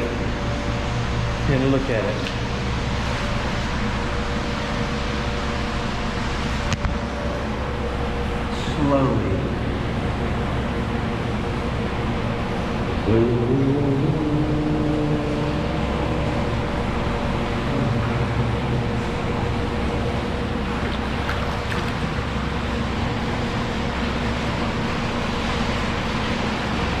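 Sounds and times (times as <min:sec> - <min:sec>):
creek water echoing in tunnel: 0:14.2 - 0:27.0.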